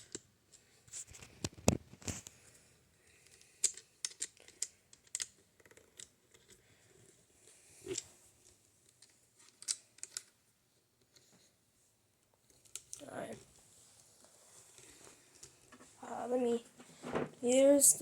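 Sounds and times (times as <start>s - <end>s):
objects clicking and tapping: 3.2s - 6.6s, 8.9s - 10.4s.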